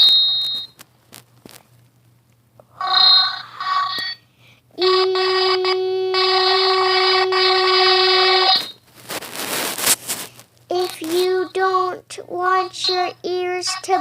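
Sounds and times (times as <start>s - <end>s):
robot voice changer buzzing: 4.8s - 8.8s, 10.7s - 14.0s.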